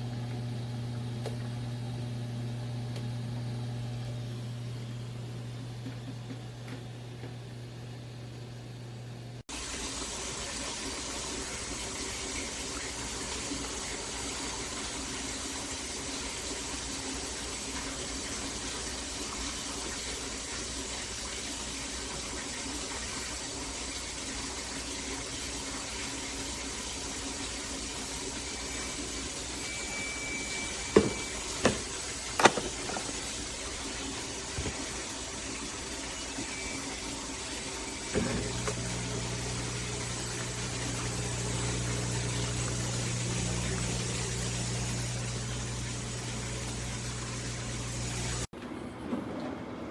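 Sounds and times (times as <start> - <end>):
low motor hum: 0.0 - 9.4, 37.9 - 48.5
dishwasher water spraying: 9.5 - 48.5.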